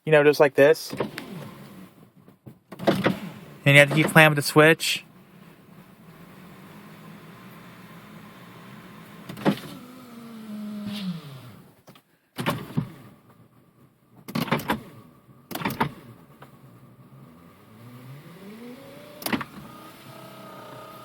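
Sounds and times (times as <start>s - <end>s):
window motor humming: 5.2s - 11.7s, 16.8s - 21.0s.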